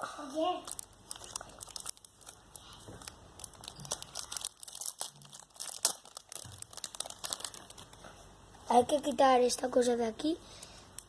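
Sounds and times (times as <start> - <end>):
packaging crinkling and tearing: 0.5 - 8.0.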